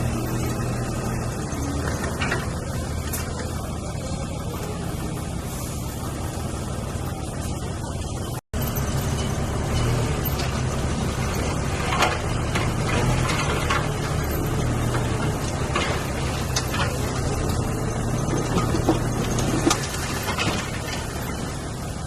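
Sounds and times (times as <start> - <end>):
heavy diesel engine running: 0.0 - 22.0
clanks of stone and metal: 8.7 - 21.5.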